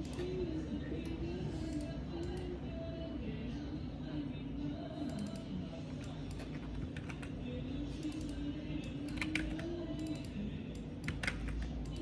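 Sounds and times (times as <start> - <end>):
low background hum: 0.0 - 12.0
computer keyboard typing: 5.1 - 7.4, 8.0 - 10.4, 11.0 - 12.0.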